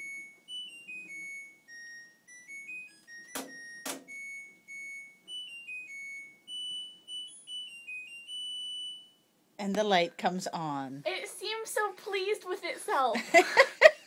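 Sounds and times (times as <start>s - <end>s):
electronic beep melody: 0.0s - 9.2s.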